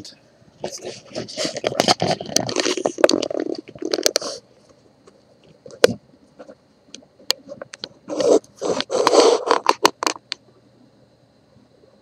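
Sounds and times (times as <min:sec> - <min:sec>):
rustling and scraping: 0:00.6 - 0:04.8, 0:07.4 - 0:10.2.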